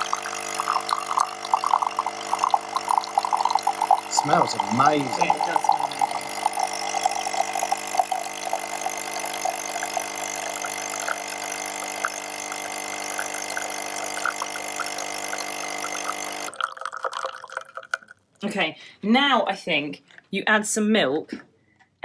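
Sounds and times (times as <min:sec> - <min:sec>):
coffee machine pump running: 0:00.0 - 0:17.9.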